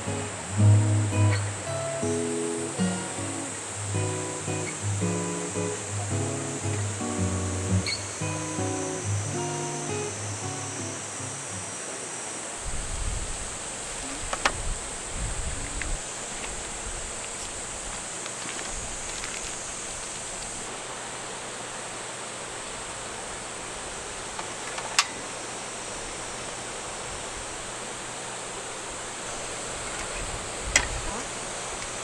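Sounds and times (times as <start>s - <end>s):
stream water rushing: 0.0s - 32.0s
sharp click: 24.4s - 25.3s.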